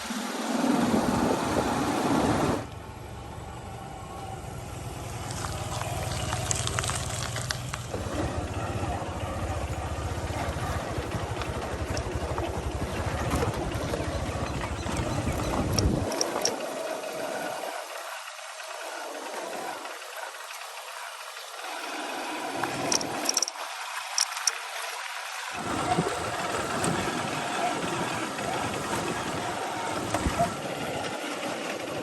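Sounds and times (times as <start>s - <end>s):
diesel engine throbbing: 0.9s - 16.5s.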